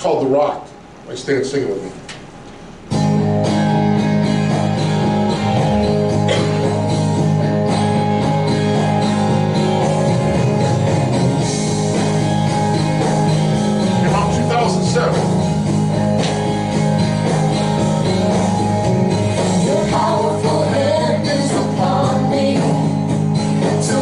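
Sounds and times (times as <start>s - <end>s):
strummed guitar worship music: 2.9s - 24.0s.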